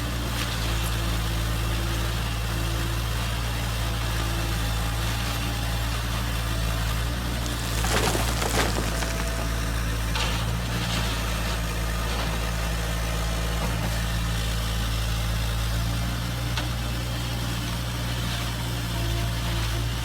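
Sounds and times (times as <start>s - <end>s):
engine idling: 1.0s - 15.6s.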